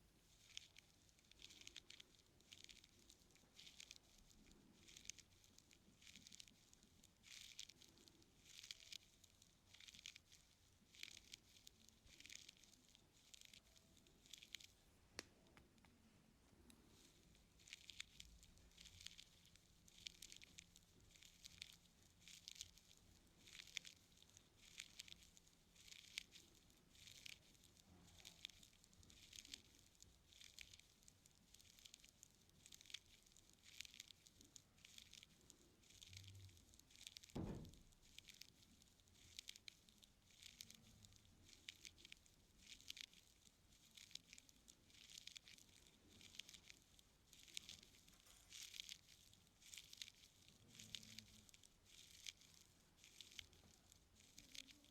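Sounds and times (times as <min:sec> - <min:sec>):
dull thump: 0:37.4 - 0:37.8.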